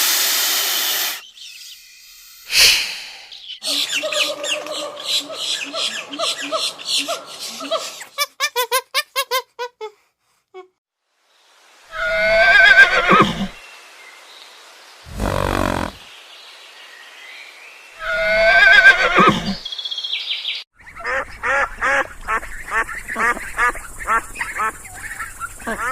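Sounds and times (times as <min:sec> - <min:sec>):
horse whinnying: 0:12.0 - 0:13.6, 0:15.1 - 0:16.0, 0:18.0 - 0:19.6
horse blowing breath: 0:15.1 - 0:16.0.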